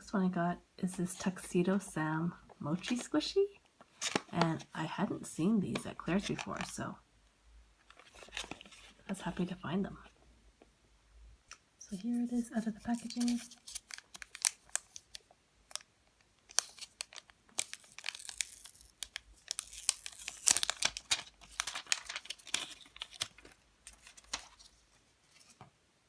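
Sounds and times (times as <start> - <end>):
plastic packaging crinkling and tearing: 3.9 - 4.6, 7.9 - 9.0, 12.6 - 24.8.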